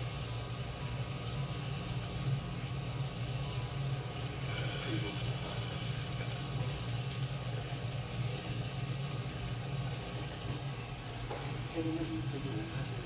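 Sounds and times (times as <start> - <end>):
popcorn machine humming: 0.0 - 13.0
sizzling hiss: 4.3 - 7.5.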